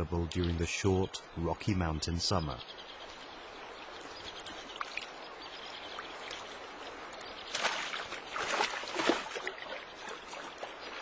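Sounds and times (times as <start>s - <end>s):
water splashing: 3.7s - 11.0s.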